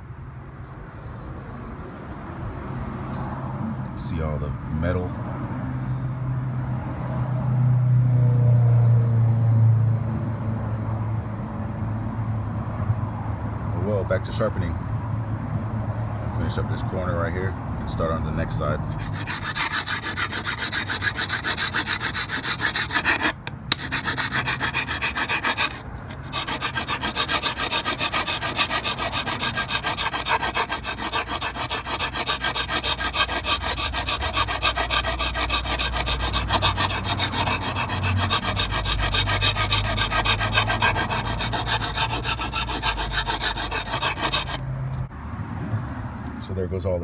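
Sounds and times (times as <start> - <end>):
file rasping on steel blade: 0.7 - 2.3, 18.9 - 44.6.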